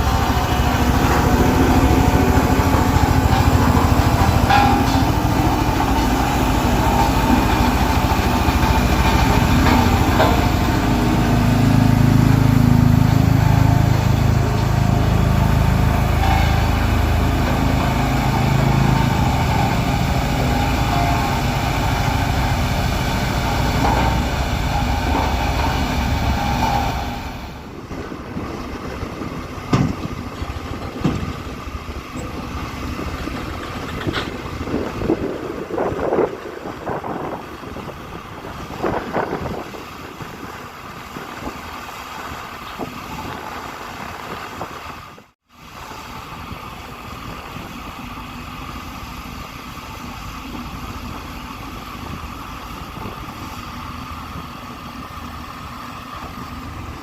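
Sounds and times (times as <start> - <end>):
quieter machine noise: 0.0 - 45.0
heavy diesel engine rumble: 0.0 - 57.0.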